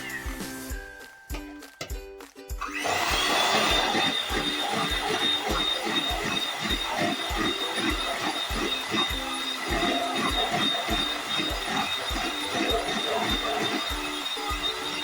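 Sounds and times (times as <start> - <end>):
background music with steady beat: 0.0 - 15.0
electric hand beater whining: 2.6 - 15.0.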